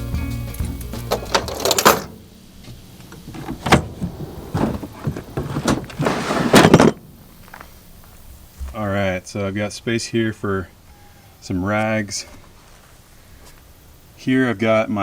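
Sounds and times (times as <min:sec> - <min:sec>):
drawers sliding and rolling: 0:01.0 - 0:07.6.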